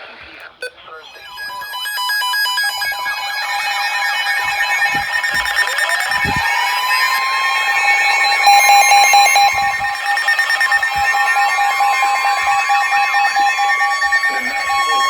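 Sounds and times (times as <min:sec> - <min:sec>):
chirping data burst: 0:00.4 - 0:15.0
overlapping electronic alarm beeps: 0:00.5 - 0:15.0
pulsing beep: 0:00.6 - 0:15.0
rising warning tone: 0:01.1 - 0:15.0.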